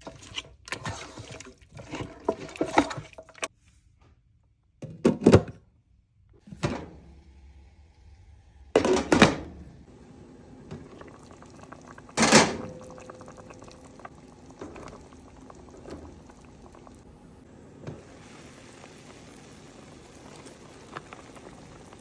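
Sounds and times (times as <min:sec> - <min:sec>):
soup bubbling in pot: 0:00.0 - 0:03.5, 0:09.8 - 0:22.0.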